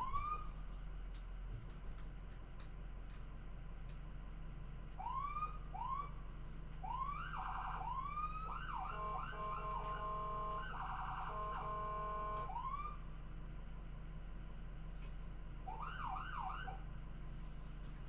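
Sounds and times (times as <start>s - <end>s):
low steady hum: 0.0s - 18.0s
electronic ambulance siren: 5.0s - 6.1s, 6.8s - 13.0s, 15.7s - 16.8s.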